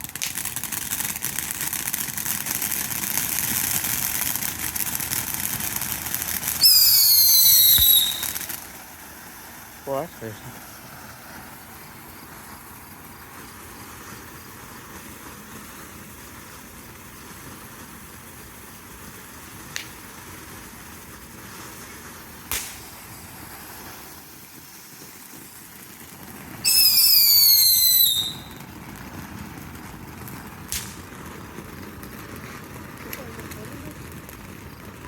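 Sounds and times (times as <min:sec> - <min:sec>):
firework cracks: 0:00.0 - 0:35.0
whistling firework shrieking: 0:06.0 - 0:08.9, 0:21.5 - 0:28.7.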